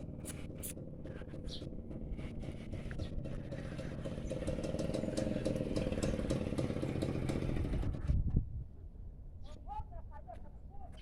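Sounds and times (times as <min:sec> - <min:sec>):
engine running: 0:00.0 - 0:08.4.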